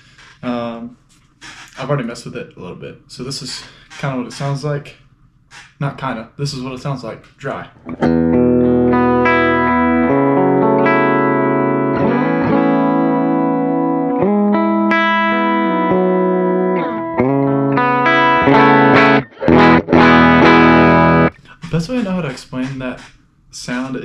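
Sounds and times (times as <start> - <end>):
person speaking: 0.0 - 5.0, 21.3 - 24.0
electric guitar chords ringing: 7.9 - 21.3.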